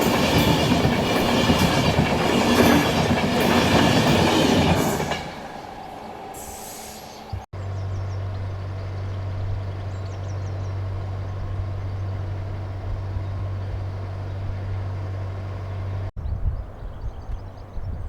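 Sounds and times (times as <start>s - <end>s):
diesel engine idling: 7.6s - 16.1s.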